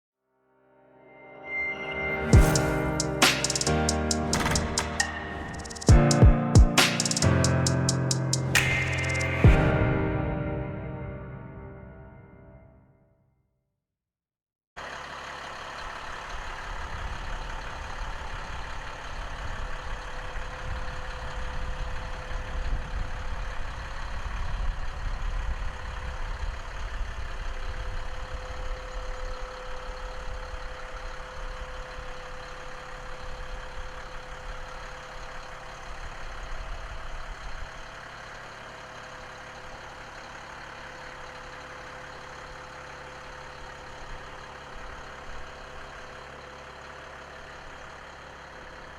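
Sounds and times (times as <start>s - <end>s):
engine whine: 1.3s - 12.7s
diesel truck engine running: 2.4s - 12.4s, 14.8s - 48.9s.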